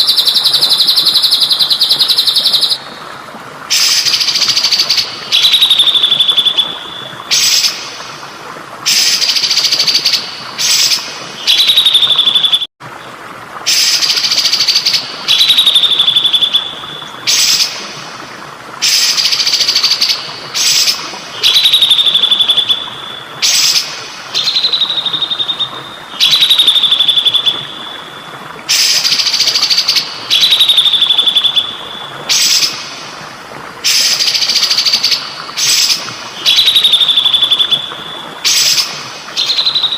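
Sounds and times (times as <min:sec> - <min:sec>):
songbird whistle and trill: 0:00.0 - 0:02.8, 0:08.9 - 0:12.7, 0:36.4 - 0:39.9
trickle of water: 0:00.0 - 0:39.9.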